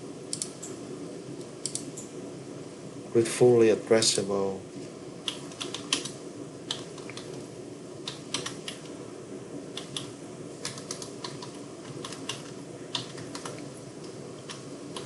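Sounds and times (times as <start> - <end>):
steady low hum: 0.0 - 15.0
typing on computer keyboard: 5.3 - 7.4, 8.1 - 8.9, 9.8 - 13.7.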